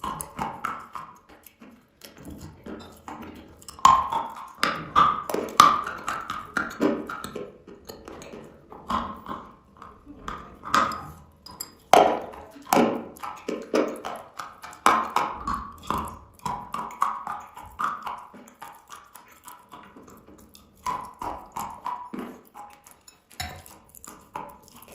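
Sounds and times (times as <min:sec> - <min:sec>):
chalk crunching and chewing: 0:00.0 - 0:24.9.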